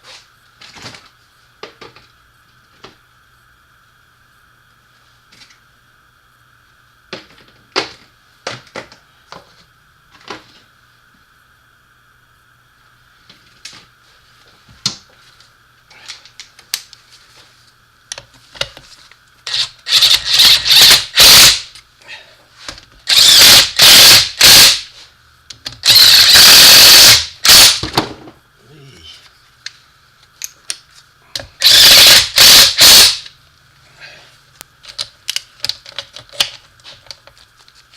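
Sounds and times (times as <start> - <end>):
power tool driving bolts: 19.5 - 21.8, 23.1 - 24.9, 25.7 - 28.0, 31.6 - 33.3.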